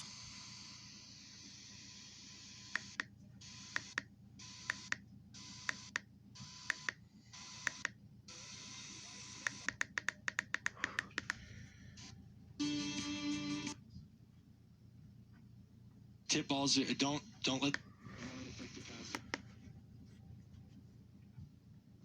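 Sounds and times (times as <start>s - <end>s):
sharp clicks: 2.7s - 3.1s, 7.7s - 8.0s, 9.4s - 11.4s
radio static hiss: 16.9s - 19.4s.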